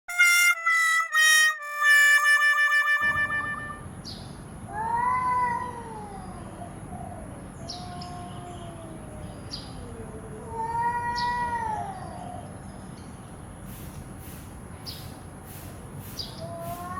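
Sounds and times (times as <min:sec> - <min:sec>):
cat moaning low: 0:04.7 - 0:12.5, 0:16.4 - 0:16.9
cats yowling: 0:04.7 - 0:12.6, 0:16.4 - 0:16.9.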